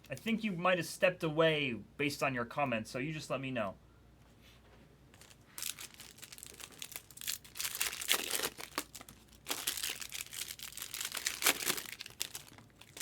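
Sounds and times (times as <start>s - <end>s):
card packaging crinkling: 5.2s - 13.0s.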